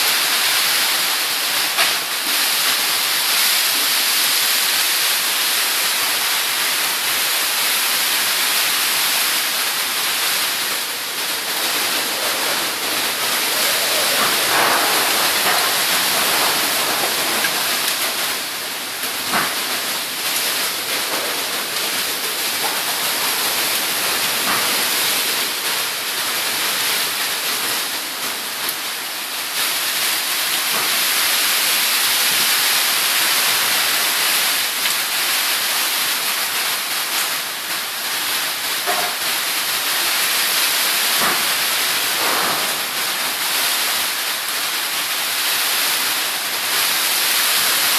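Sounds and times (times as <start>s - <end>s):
heavy rain: 0.0s - 47.9s.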